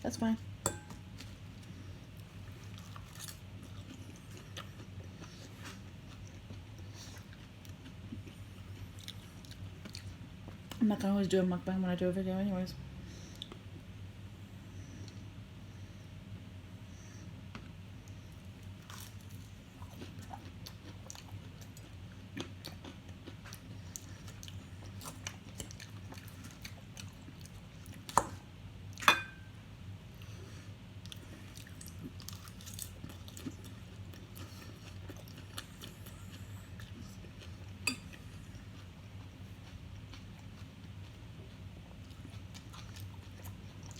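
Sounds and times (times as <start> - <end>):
low steady hum: 0.0 - 43.9
person chewing and crunching food: 1.2 - 10.8, 17.6 - 28.3, 31.0 - 43.9.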